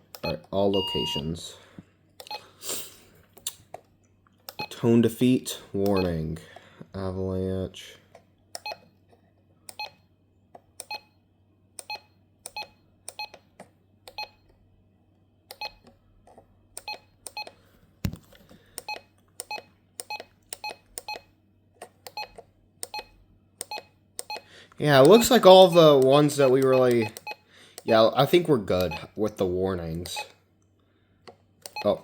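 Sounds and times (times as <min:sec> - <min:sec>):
short electronic key beeps: 0:00.2 - 0:01.2.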